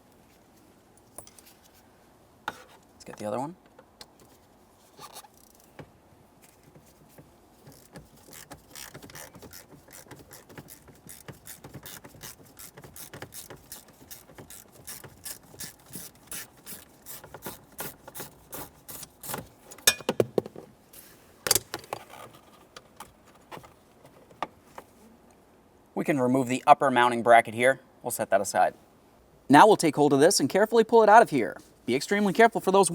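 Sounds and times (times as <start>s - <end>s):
hand tool ratcheting clicks: 7.7s - 16.8s.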